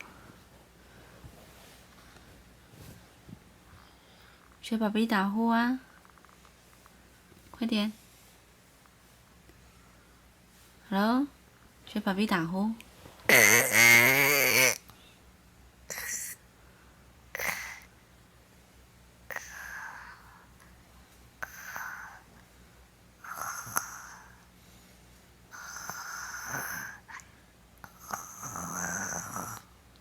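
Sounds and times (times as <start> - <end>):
child imitating a snore: 13.3 - 14.8, 15.9 - 16.4, 17.3 - 17.9, 23.2 - 24.2, 25.5 - 27.2, 27.9 - 29.7.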